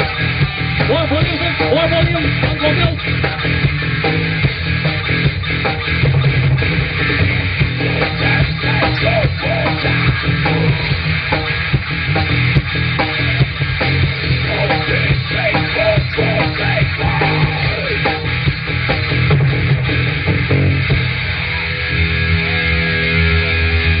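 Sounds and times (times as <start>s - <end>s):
electric guitars ringing: 0.0s - 24.0s
live rock band playing: 0.0s - 24.0s.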